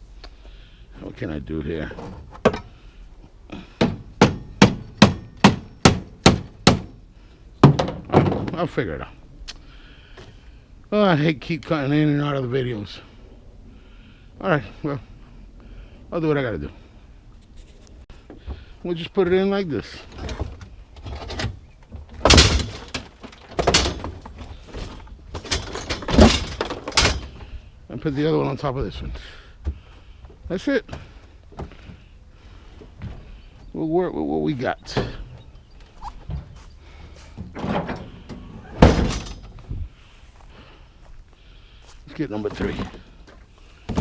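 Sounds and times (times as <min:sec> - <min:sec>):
hammer blows: 0:03.7 - 0:07.0.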